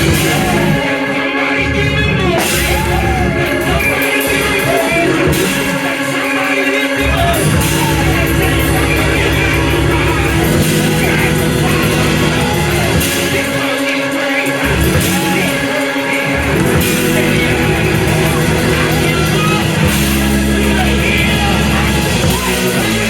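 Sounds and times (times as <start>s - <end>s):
heavy shifting bass line: 0.0s - 13.9s, 14.6s - 23.0s
church music with held chords: 0.0s - 23.0s
voices singing: 0.0s - 23.0s.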